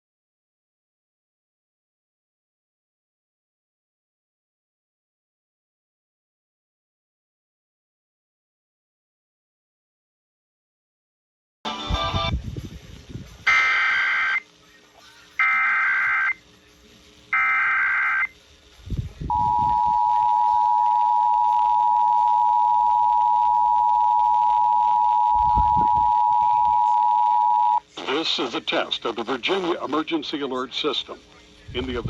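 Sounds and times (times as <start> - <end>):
digital data tone bursts: 13.5 - 14.4, 15.1 - 16.4, 17.3 - 18.4, 19.3 - 27.8
two-tone attention signal: 13.5 - 14.4, 15.4 - 16.4, 17.4 - 18.3, 19.3 - 27.8.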